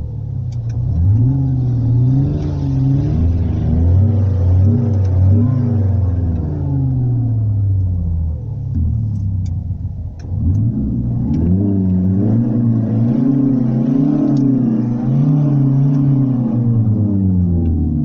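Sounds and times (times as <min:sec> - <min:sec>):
simulated engine revving: 0:00.6 - 0:08.0, 0:10.2 - 0:18.0.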